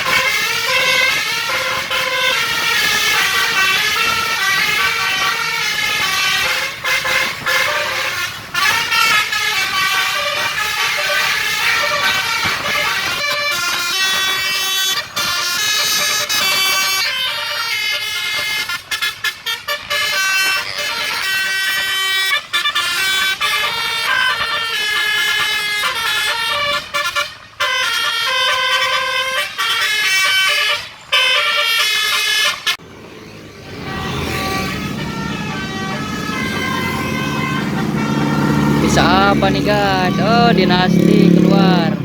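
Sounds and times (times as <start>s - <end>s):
bus musical horn playing a tune: 0.0s - 32.8s, 33.6s - 42.0s
engine rumble: 32.8s - 42.0s.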